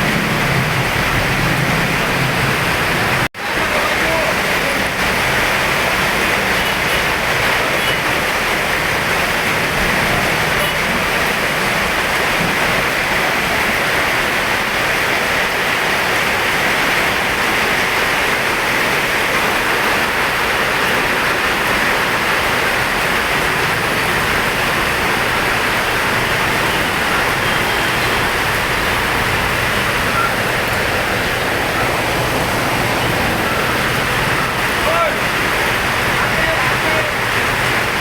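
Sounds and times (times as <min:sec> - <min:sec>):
heavy rain: 0:00.0 - 0:38.0.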